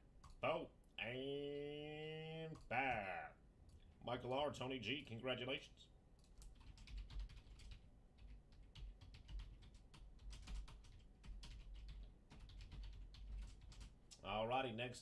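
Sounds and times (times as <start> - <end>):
typing on a keyboard: 6.2 - 14.2.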